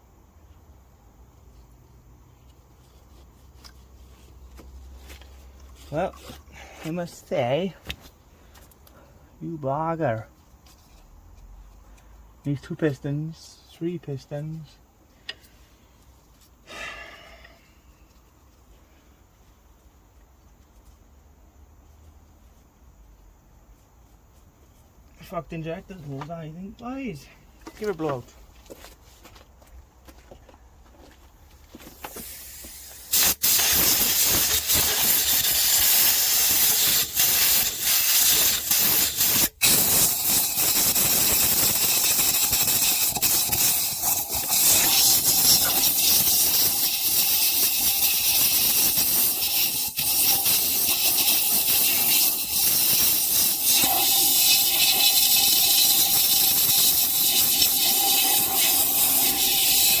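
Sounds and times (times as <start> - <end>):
compressed-air blow gun hissing: 31.9 - 60.0.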